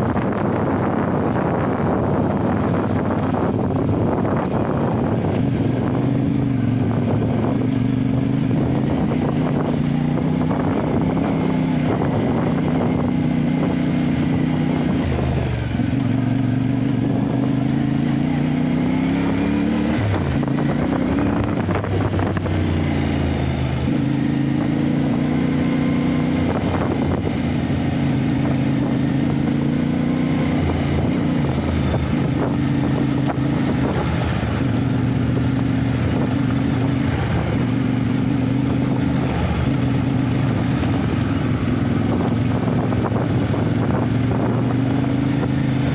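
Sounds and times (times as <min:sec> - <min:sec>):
motorcycle engine running: 0:00.0 - 0:45.9.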